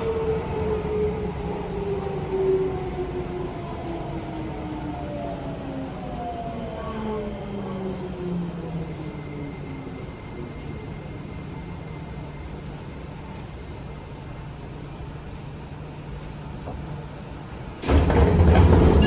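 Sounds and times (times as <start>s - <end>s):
train low hum: 0.0s - 19.0s
train doors opening: 16.1s - 19.0s.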